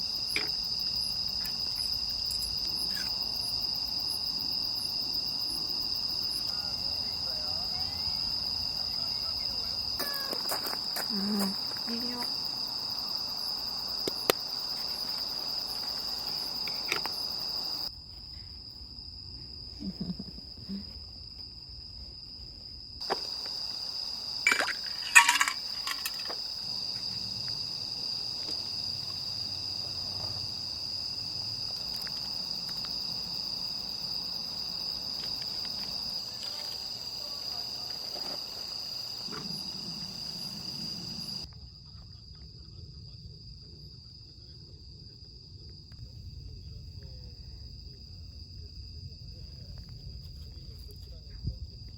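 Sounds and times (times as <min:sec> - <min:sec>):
crickets chirring: 0:00.0 - 0:51.9
clicks and clinks of handling: 0:24.5 - 0:26.4.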